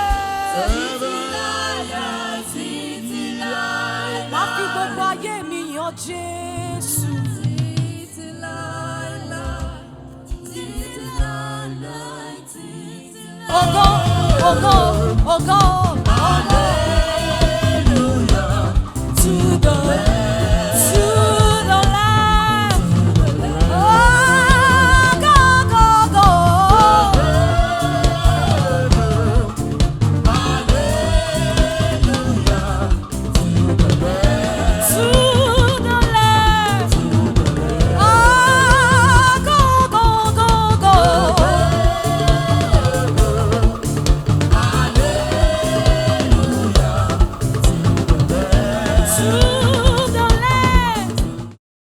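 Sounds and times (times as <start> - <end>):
drum kit beat: 0.0 - 2.4, 13.5 - 51.6
singer with vibrato: 0.0 - 51.6.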